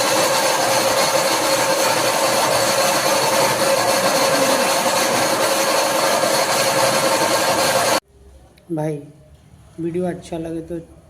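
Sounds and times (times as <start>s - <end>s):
milling machine grinding: 0.0s - 8.0s.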